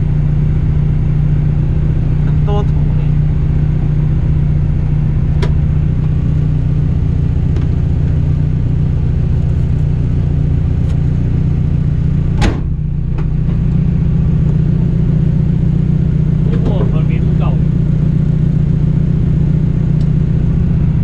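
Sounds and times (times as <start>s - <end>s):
rally car engine at speed: 0.0s - 21.0s
loud thump: 5.4s - 5.7s, 7.4s - 7.9s, 12.3s - 13.7s.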